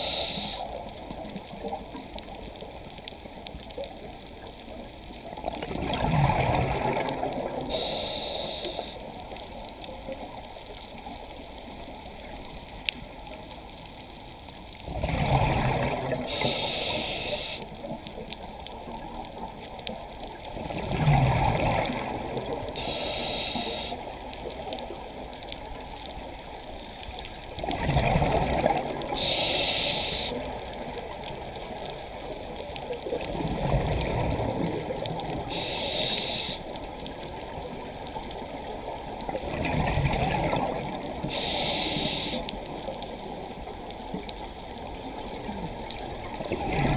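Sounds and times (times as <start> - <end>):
regulator inhalation hiss: 0.0 - 0.8, 7.7 - 9.1, 16.2 - 17.7, 22.8 - 24.2, 29.1 - 30.6, 35.5 - 36.7, 41.2 - 42.6
exhaled bubbles gurgling underwater: 0.0 - 46.9.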